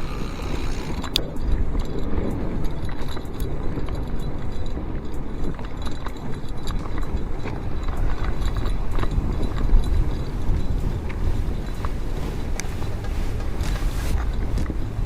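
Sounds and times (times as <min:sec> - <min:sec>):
bike tyres crunching through snow: 0:00.0 - 0:01.2, 0:04.8 - 0:15.0
bike clicks and rattles: 0:00.0 - 0:15.0.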